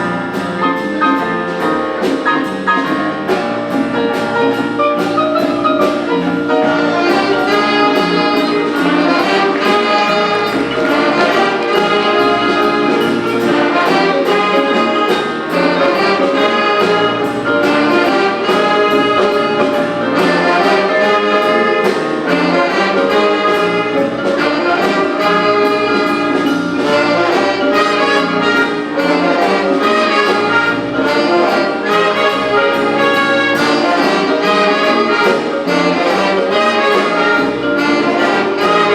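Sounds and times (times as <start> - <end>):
big band jazz: 0.0 - 38.9.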